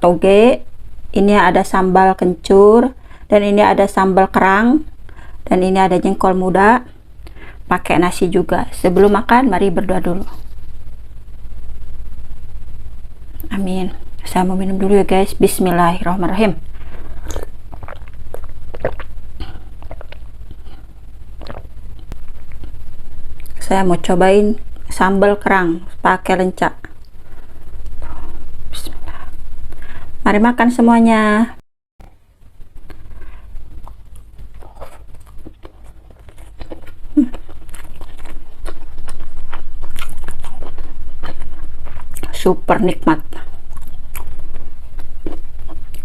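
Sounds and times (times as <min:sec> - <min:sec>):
steady low hum: 0:00.0 - 0:46.0
chewing and mouth sounds: 0:16.8 - 0:20.8, 0:21.4 - 0:22.8, 0:32.8 - 0:42.4, 0:43.2 - 0:46.0
person gulping and swallowing: 0:16.8 - 0:22.8
mouth clicks: 0:17.2 - 0:20.8, 0:21.4 - 0:22.8.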